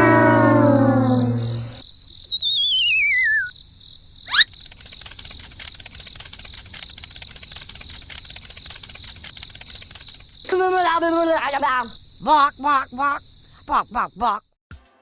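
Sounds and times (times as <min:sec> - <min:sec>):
falling whistle: 0:00.0 - 0:03.5, 0:04.3 - 0:04.5
crickets chirping: 0:00.0 - 0:14.6.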